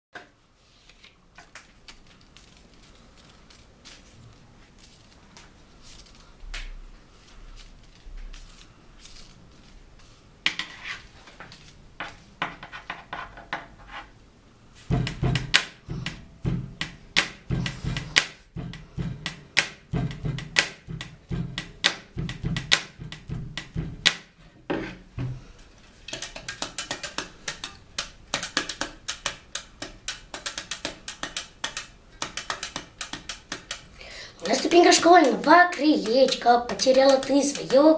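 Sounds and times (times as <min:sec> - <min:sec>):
rhythmic knocking on a desk: 0:14.9 - 0:24.3, 0:26.1 - 0:33.9, 0:34.5 - 0:37.9.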